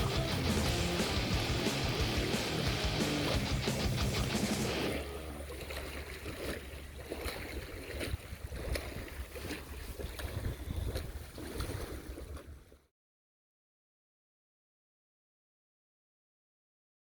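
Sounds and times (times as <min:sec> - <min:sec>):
lapping water: 0:00.0 - 0:12.9
wind buffeting microphone: 0:07.6 - 0:12.3.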